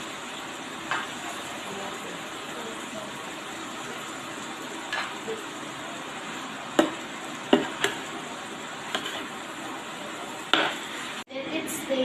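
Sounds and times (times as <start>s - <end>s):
filling sizzling in a pan: 0.0s - 12.0s
spatula knocking against pan: 6.8s - 8.0s.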